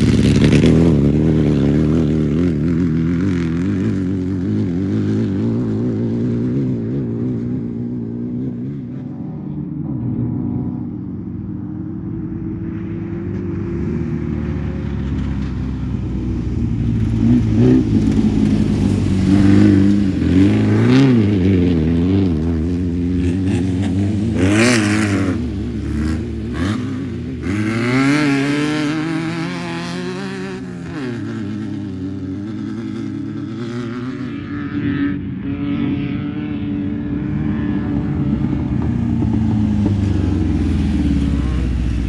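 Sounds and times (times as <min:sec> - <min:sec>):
car engine revving hard: 0:17.1 - 0:31.7.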